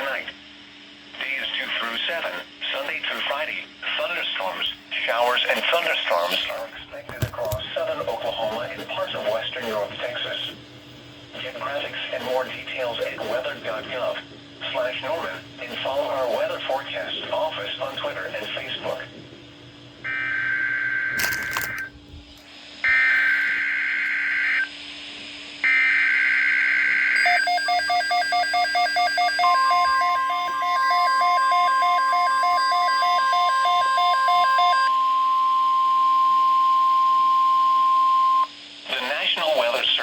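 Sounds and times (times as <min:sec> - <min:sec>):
steady warning alarm tone: 0:07.6 - 0:19.2, 0:19.9 - 0:21.9, 0:22.8 - 0:25.0, 0:25.6 - 0:38.6.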